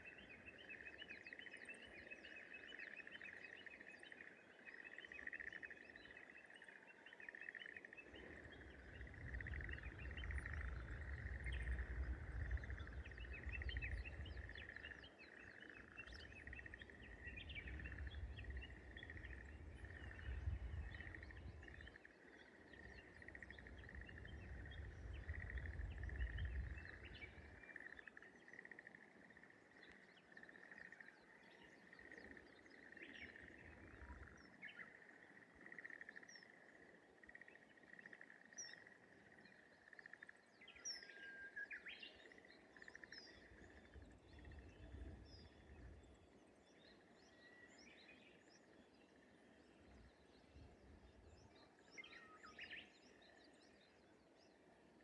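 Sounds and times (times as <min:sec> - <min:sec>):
bird chirps: 0:00.0 - 0:29.0.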